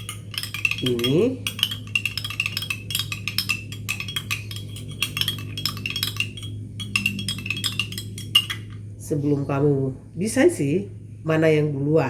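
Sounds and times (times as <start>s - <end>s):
light clicks and clinks: 0.0s - 8.9s
steady low hum: 0.0s - 11.4s.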